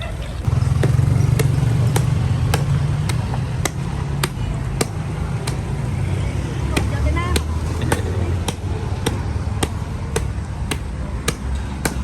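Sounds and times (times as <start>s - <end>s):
engine running: 0.4s - 12.0s
sharp knocks: 0.6s - 5.7s.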